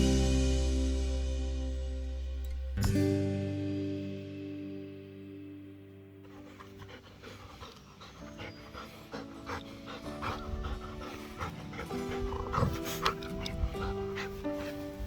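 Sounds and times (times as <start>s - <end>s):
soft background music: 0.0s - 15.0s
dog panting: 6.2s - 15.0s.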